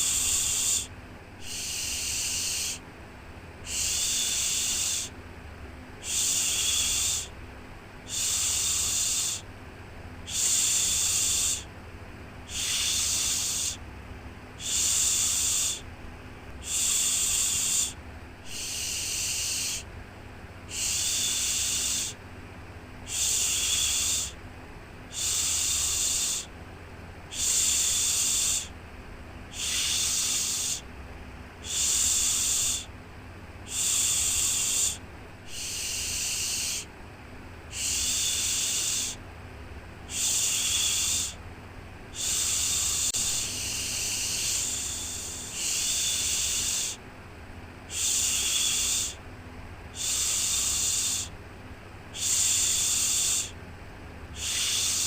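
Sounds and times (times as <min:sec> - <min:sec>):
person shushing: 0:00.0 - 0:02.8, 0:16.6 - 0:19.8, 0:29.5 - 0:30.8, 0:33.7 - 0:36.9, 0:42.2 - 0:47.0, 0:47.9 - 0:49.2, 0:54.4 - 0:55.0
faint low hum: 0:00.0 - 0:55.0.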